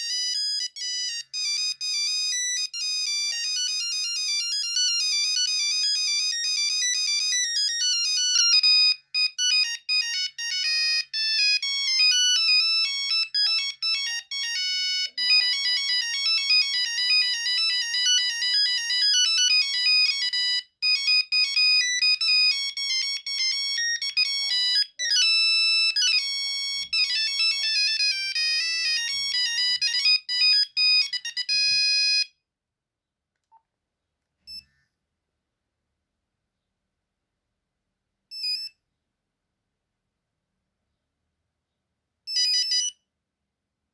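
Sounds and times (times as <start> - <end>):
monophonic phone ringtone: 0.0 - 32.4, 42.3 - 43.0.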